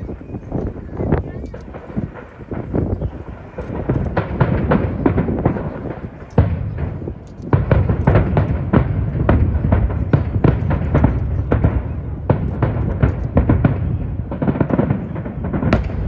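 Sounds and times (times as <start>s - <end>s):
fireworks bangs: 0.0s - 16.0s
deep rumble: 15.6s - 16.0s.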